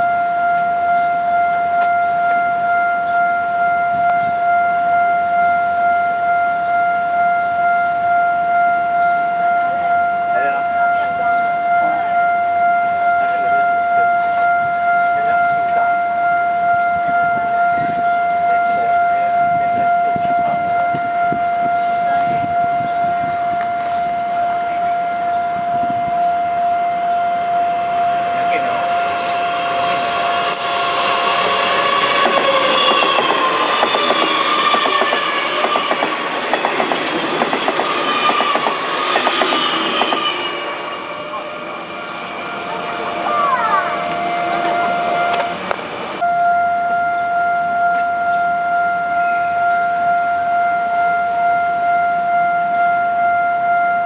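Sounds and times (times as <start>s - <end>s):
level crossing alarm tone: 0.0s - 54.0s
train whine: 0.0s - 54.0s
train wheels clicking over rail joints: 32.0s - 40.2s.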